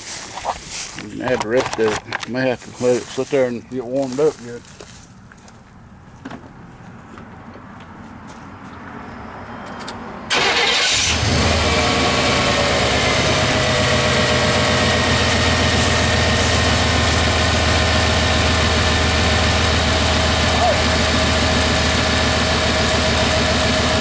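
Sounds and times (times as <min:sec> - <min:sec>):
engine starter cranking: 0:10.3 - 0:11.8
truck engine idling: 0:10.3 - 0:24.0.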